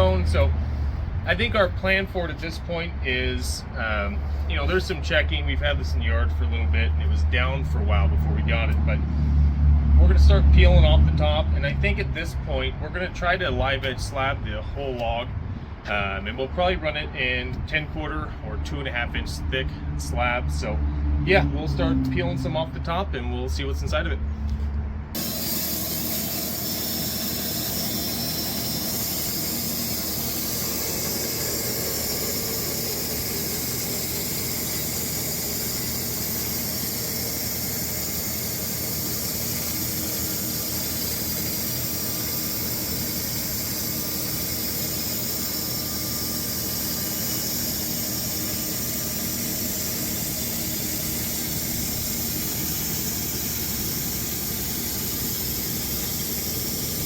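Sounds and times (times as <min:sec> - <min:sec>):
sawmill cutting log: 0:25.2 - 0:57.0.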